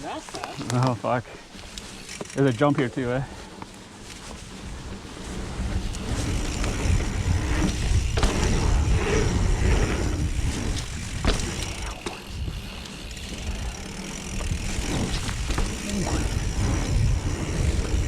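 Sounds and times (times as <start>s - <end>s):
bike rattling: 0.0s - 18.0s
tyres over rough ground: 0.0s - 18.0s
wind rumbling on microphone: 4.4s - 18.0s.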